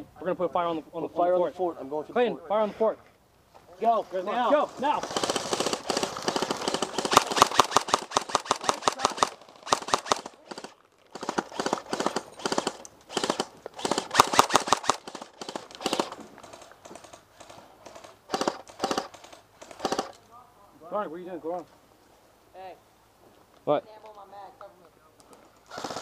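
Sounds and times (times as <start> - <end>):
airsoft rifle firing full-auto: 5.0 - 20.1, 25.7 - 26.0.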